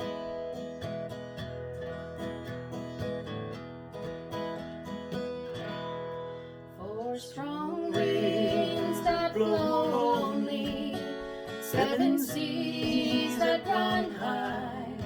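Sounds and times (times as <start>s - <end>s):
acoustic guitar strumming: 0.0s - 15.0s
person singing: 6.8s - 15.0s.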